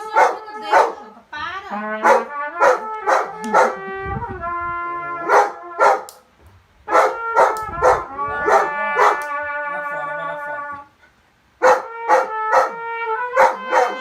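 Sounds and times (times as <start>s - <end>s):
dog barking: 0.0s - 1.1s, 2.0s - 3.8s, 5.2s - 6.2s, 6.9s - 9.3s, 11.6s - 14.0s
trumpet playing mournful call: 0.0s - 6.2s, 6.8s - 11.0s, 11.6s - 14.0s.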